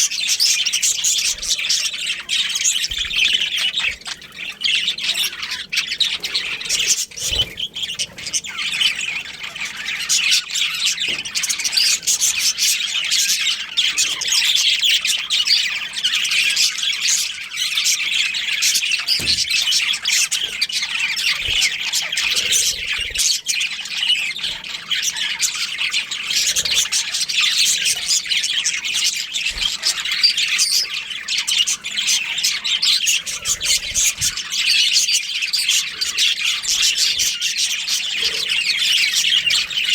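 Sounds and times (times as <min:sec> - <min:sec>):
budgerigars chirping and chattering: 0:00.0 - 0:39.9.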